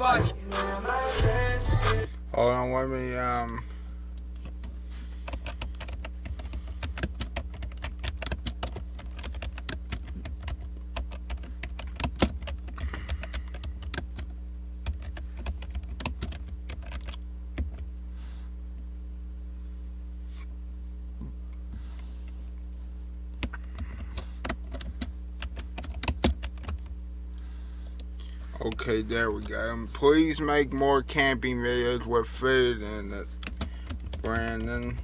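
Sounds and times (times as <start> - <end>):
low electrical hum: 0.0 - 35.0
keyboard typing: 5.2 - 17.8, 23.4 - 26.8.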